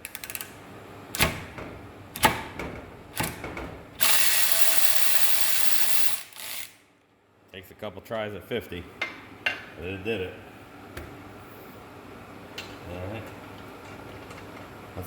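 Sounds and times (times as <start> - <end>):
cordless ratchet straining: 0.0 - 0.5, 4.0 - 6.7.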